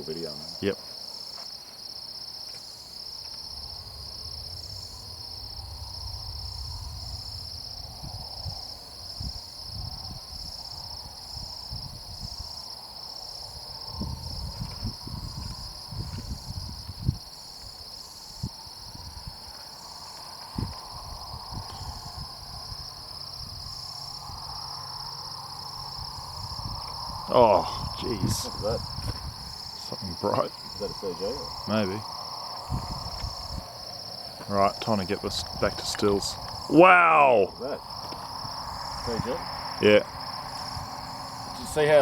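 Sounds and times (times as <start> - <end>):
crickets chirping: 0.0 - 42.0
low rumbles: 25.3 - 42.0.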